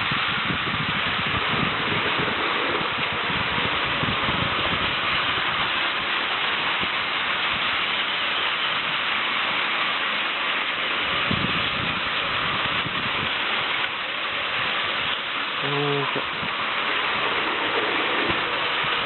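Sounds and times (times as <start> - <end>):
wheels rattling on rails: 1.0 - 6.8, 16.3 - 19.0.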